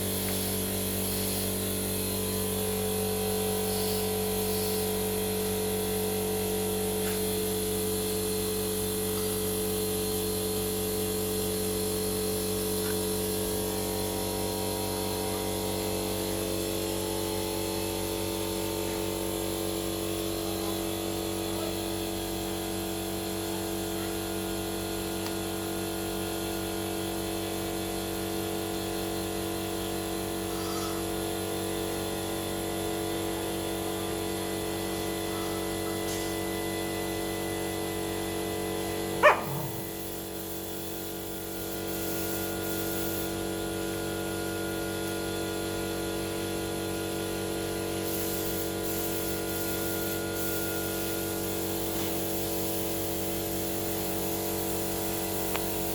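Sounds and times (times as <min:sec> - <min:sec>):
puppy yelp: 0:39.2 - 0:39.9.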